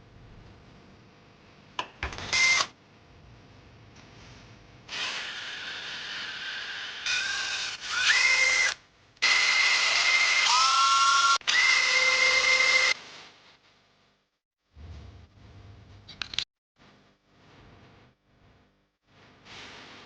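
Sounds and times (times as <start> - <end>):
electric drill motor whining: 2.3 - 2.7, 4.9 - 13.0.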